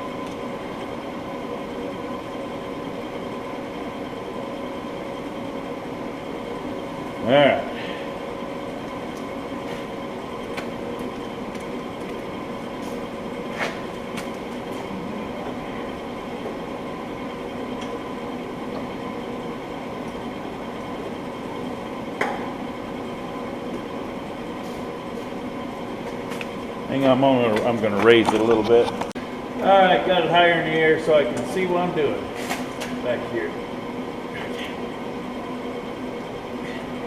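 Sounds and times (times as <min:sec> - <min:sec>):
machine hum: 0:00.0 - 0:37.0.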